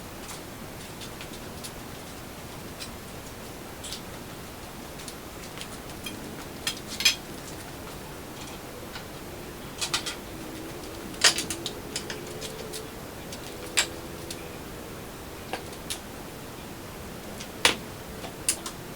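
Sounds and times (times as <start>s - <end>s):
faint steady tone: 6.0s - 18.7s
metal parts and tools clinking: 9.8s - 14.4s.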